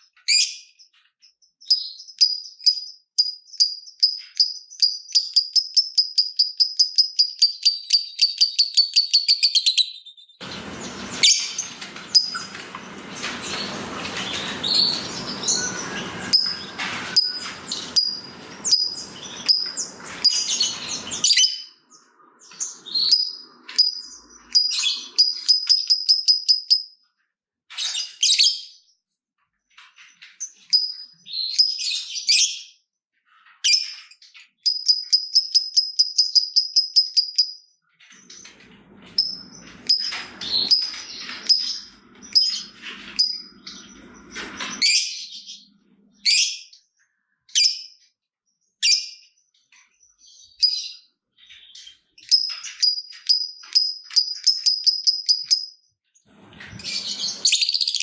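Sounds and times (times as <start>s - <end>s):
harsh chatter and clicks: 10.4s - 21.2s
lovebirds chirping: 10.4s - 26.8s, 56.2s - 58.0s.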